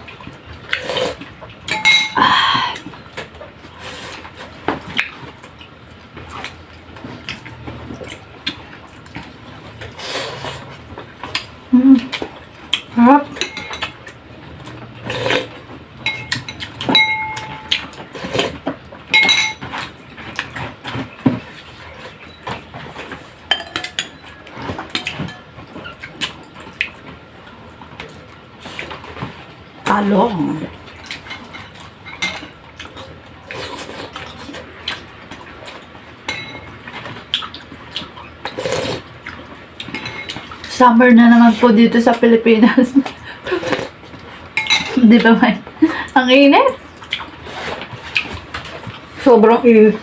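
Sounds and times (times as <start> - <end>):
cutlery clinking on ceramic plate: 1.7 - 2.2, 13.4 - 14.0, 16.0 - 17.9, 19.2 - 19.8, 23.5 - 25.5, 31.1 - 32.6, 36.3 - 36.7, 39.9 - 40.4, 44.6 - 45.0.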